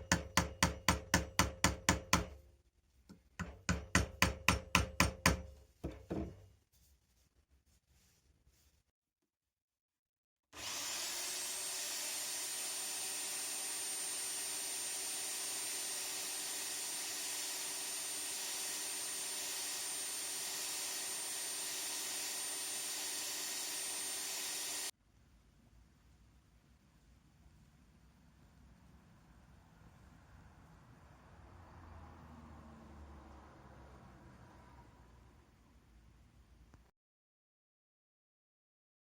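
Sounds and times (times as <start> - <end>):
power tool whining: 10.6 - 24.9.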